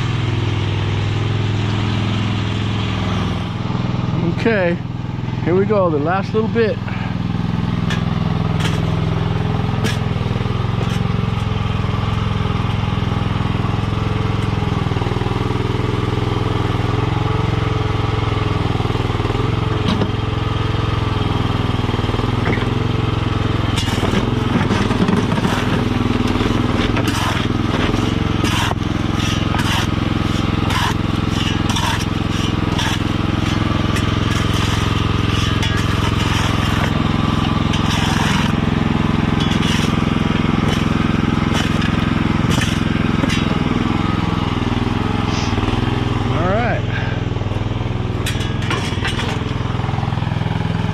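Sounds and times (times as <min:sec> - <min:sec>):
gravel crunching: 0:00.0 - 0:17.1, 0:21.3 - 0:50.4
small engine running: 0:00.0 - 0:50.9.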